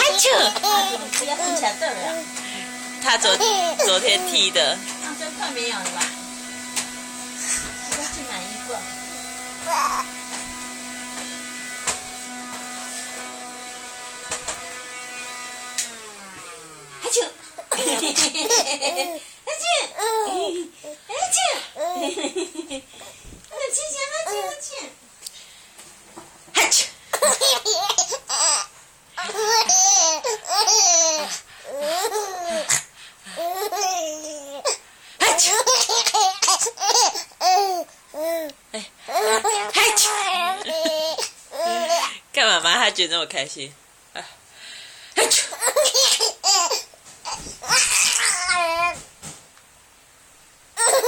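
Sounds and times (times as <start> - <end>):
baby laughing: 0.0 - 2.2, 3.0 - 4.5, 9.6 - 10.1, 17.1 - 19.2, 19.8 - 23.0, 24.2 - 24.6, 26.6 - 38.5, 39.1 - 42.2, 45.2 - 49.0, 50.8 - 51.0
electric motor humming: 0.0 - 18.8
mock sneeze: 26.6 - 27.0.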